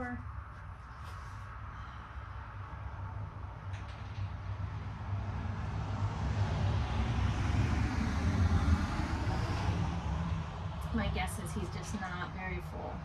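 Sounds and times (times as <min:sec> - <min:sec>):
low steady rumble: 0:08.3 - 0:13.0.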